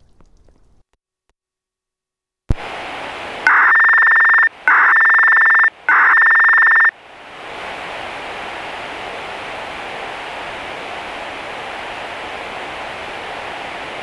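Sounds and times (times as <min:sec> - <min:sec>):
radio static hiss: 0:02.5 - 0:14.0
electronic beeps: 0:03.5 - 0:06.9.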